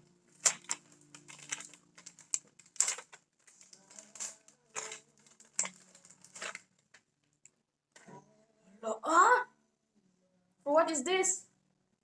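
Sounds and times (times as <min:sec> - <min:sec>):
packaging rustling and crinkling: 0:00.0 - 0:07.0.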